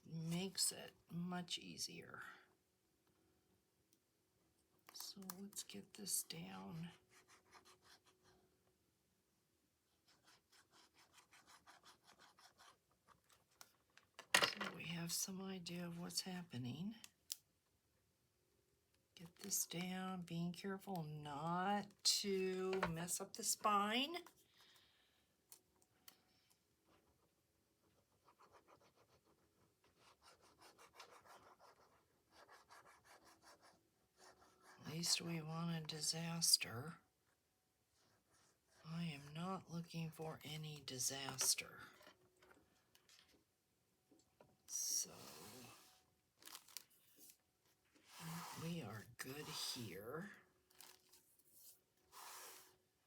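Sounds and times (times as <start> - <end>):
hand rubbing paper page: 48.0 - 48.8, 50.8 - 52.7.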